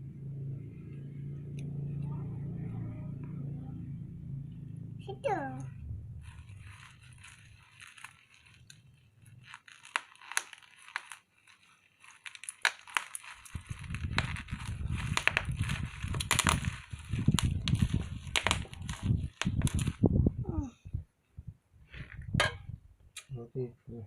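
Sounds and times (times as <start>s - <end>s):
close handling rumble: 0.0s - 9.5s, 13.4s - 21.1s
packaging crinkling: 6.2s - 20.0s.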